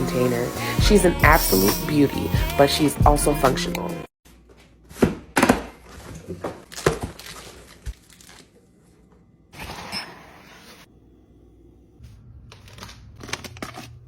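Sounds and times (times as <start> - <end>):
rushing hiss: 1.4 - 2.0.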